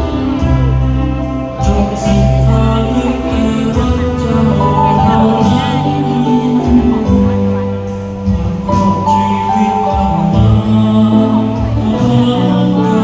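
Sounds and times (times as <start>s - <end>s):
military band playing slowly: 0.0s - 13.0s
person singing: 0.0s - 13.0s.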